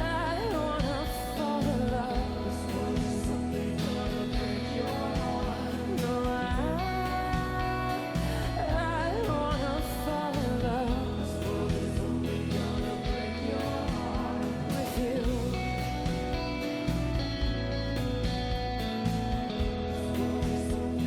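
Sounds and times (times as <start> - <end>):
pop song with singing and guitar: 0.0 - 21.0.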